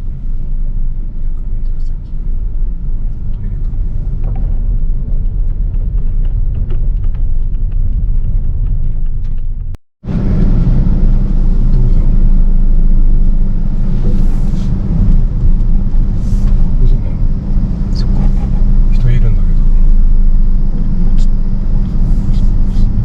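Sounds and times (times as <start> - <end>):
car road and engine rumble: 0.0 - 23.0.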